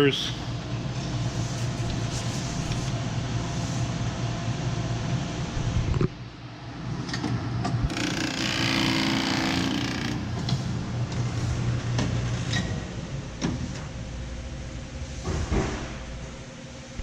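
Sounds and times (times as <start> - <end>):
binding machine motor hum: 7.9 - 13.2.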